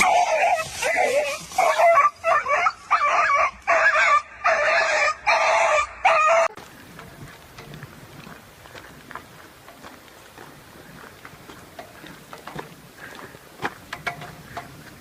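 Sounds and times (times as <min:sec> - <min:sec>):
dog calling: 0:00.0 - 0:06.6.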